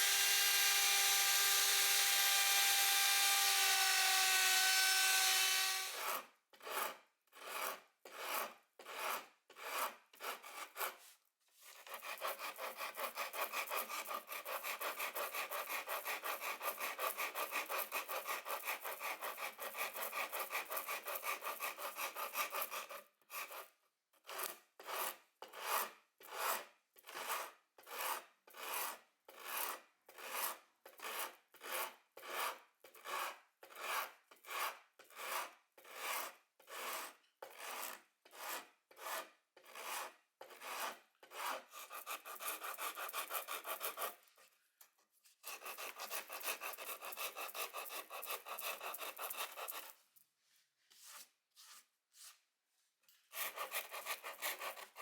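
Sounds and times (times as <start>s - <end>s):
abrasive tool rubbing on wood: 0.0s - 6.0s.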